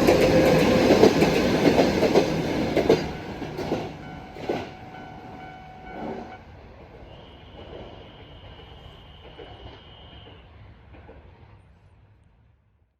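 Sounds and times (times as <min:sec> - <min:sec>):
train wheels clacking over rail joints: 0:00.0 - 0:05.0.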